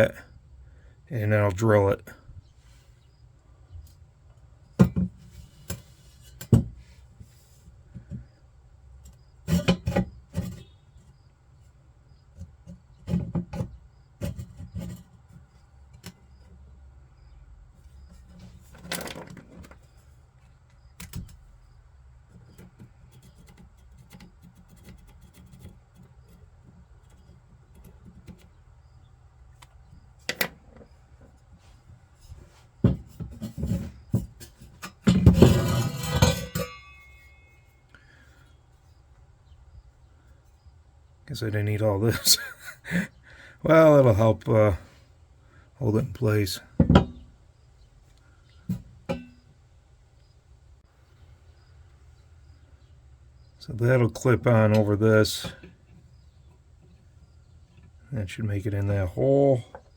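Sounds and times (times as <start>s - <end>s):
metal tools clinking and knocking: 33.4s - 37.7s.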